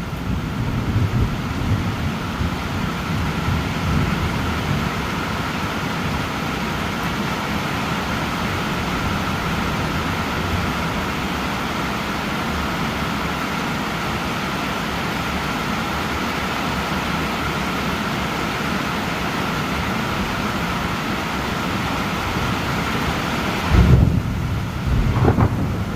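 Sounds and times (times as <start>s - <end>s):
low thunder rumble: 0.0s - 5.5s, 23.6s - 25.9s
steady rain hiss: 0.0s - 25.9s.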